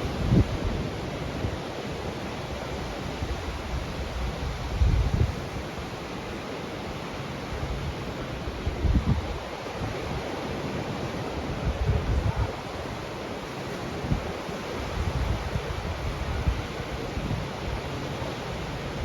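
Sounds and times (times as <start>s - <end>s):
wind buffeting microphone: 0.0s - 1.6s, 3.1s - 5.6s, 7.6s - 12.8s
surf: 0.0s - 19.0s
wind: 0.0s - 19.0s.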